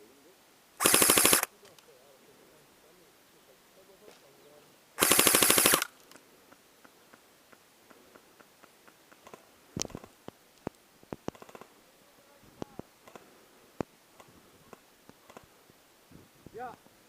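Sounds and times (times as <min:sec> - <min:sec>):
sharp cracks: 0:00.8 - 0:01.9, 0:05.0 - 0:06.2, 0:08.8 - 0:11.7, 0:13.0 - 0:13.3
faint irregular clicks and snaps: 0:01.4 - 0:01.9, 0:05.8 - 0:11.7, 0:12.6 - 0:15.5.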